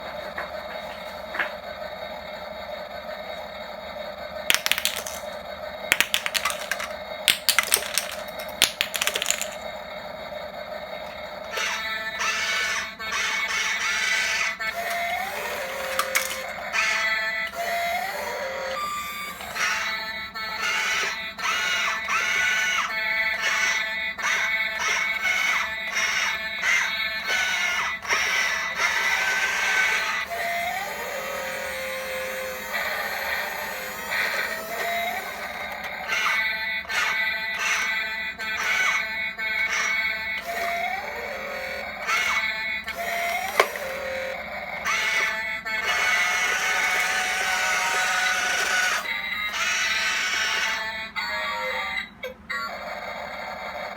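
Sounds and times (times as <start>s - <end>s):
rattling and clatter: 4.5s - 9.6s
electric motors whining: 10.4s - 52.0s.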